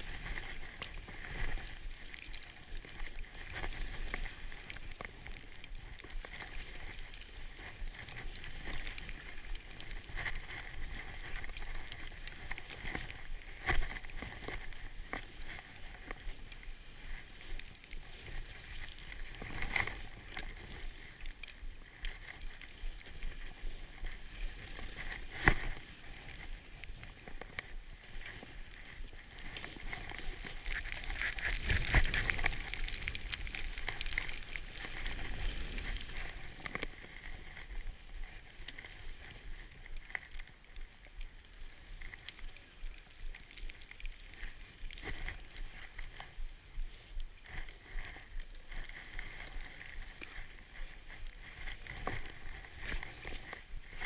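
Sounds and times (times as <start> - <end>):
skis scraping over snow: 0.0 - 54.0.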